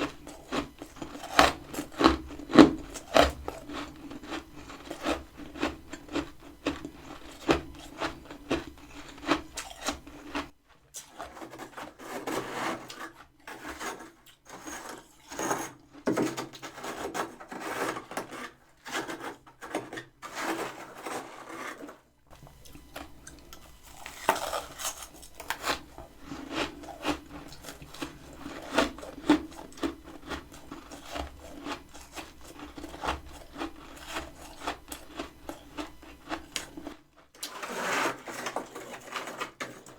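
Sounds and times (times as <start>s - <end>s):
steady low hum: 0.0s - 10.5s, 22.3s - 37.0s
frost being scraped and crunched: 0.0s - 10.6s, 20.2s - 39.4s.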